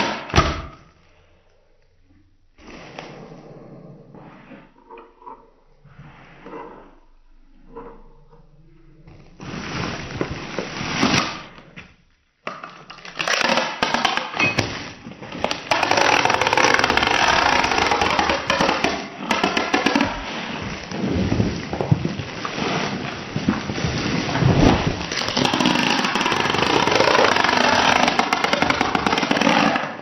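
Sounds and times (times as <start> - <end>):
sharp clicks and crackles: 15.4 - 30.0
packaging rustling and crinkling: 19.7 - 29.7.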